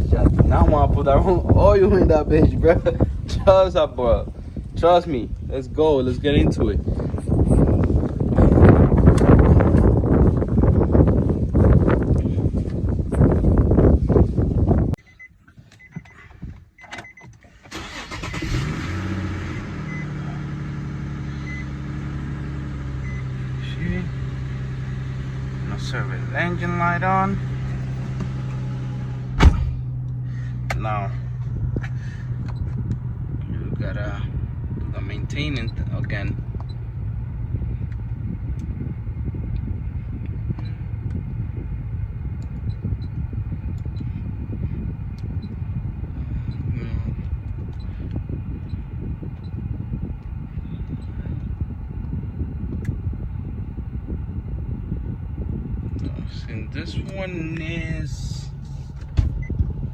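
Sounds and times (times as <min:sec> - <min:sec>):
car engine starting and idling: 0:00.0 - 0:59.9
dashboard warning beeps: 0:15.0 - 0:17.4, 0:19.9 - 0:20.1, 0:23.0 - 0:23.2.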